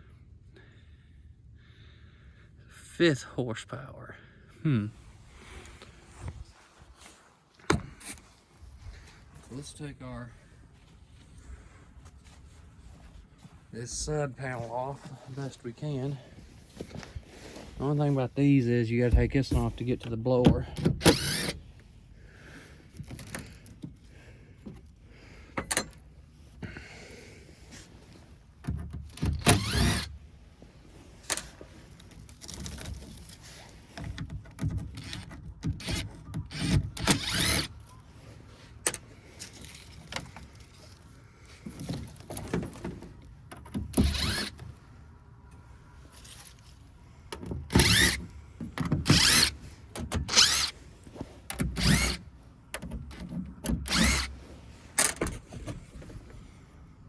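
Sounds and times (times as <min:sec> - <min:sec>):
power drill whirring: 0:20.6 - 0:21.7, 0:29.1 - 0:30.2, 0:35.0 - 0:37.8, 0:43.9 - 0:44.7, 0:47.7 - 0:48.3, 0:49.0 - 0:50.8, 0:51.6 - 0:52.3, 0:53.8 - 0:54.4.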